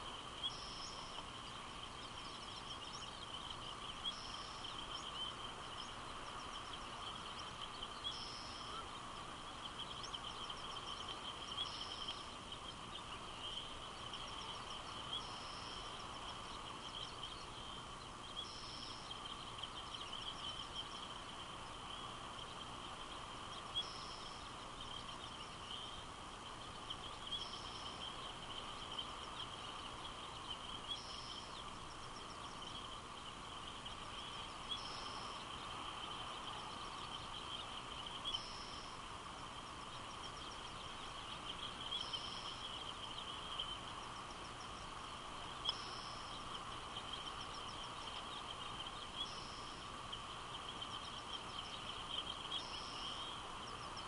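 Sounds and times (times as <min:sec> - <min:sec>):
steady high chirring: 0:00.0 - 0:54.0.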